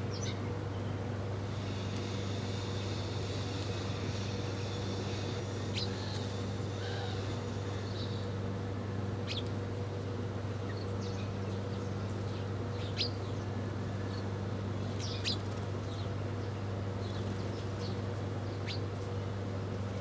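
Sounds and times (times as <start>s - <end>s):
steady low hum: 0.0s - 14.7s
small birds chirping: 3.0s - 8.3s.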